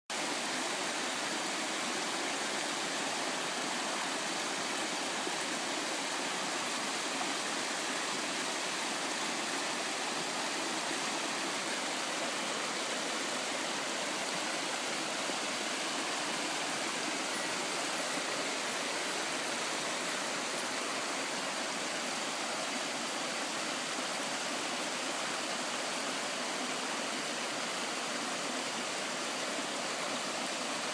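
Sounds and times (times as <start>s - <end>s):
waterfall rushing: 0.2s - 30.9s.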